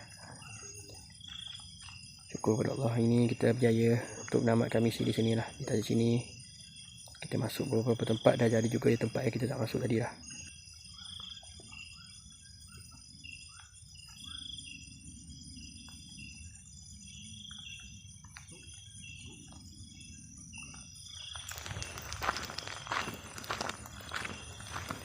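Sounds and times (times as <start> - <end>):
crickets chirping: 0.0 - 25.0
high-pitched insect drone: 0.0 - 25.0
footsteps: 21.3 - 25.0.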